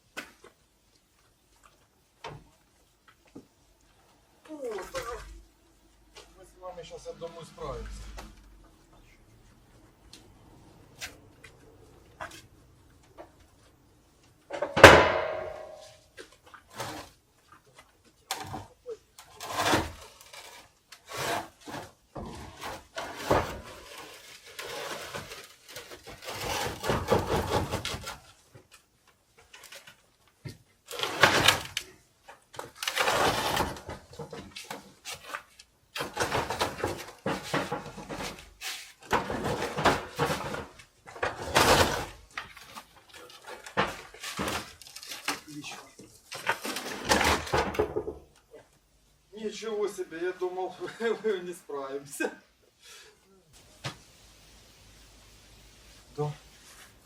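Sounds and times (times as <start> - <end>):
heavy object scraping on boards: 19.3 - 28.1, 32.9 - 34.2, 36.0 - 42.3.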